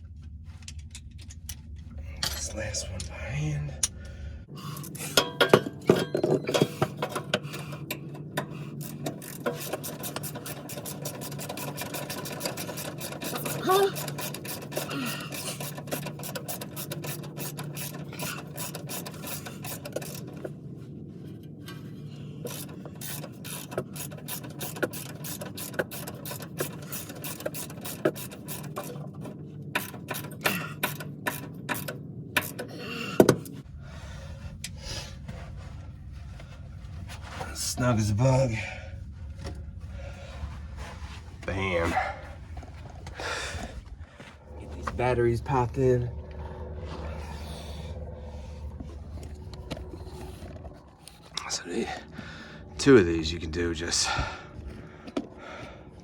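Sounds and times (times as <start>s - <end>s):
steady low hum: 0.0s - 56.0s
ratchet wrench clicking: 7.0s - 20.3s, 22.5s - 29.0s.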